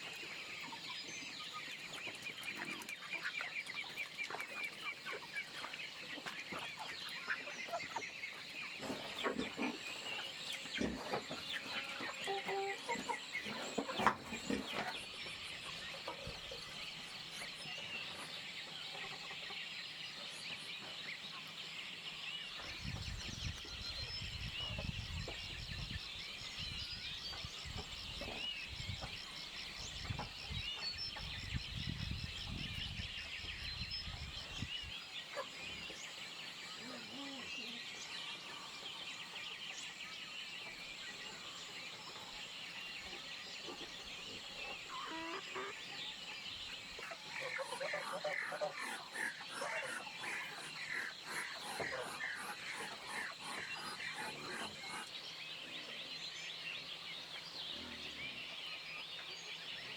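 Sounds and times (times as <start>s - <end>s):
small birds chirping: 0.0s - 59.9s
poultry calling: 4.3s - 16.8s, 41.2s - 55.2s.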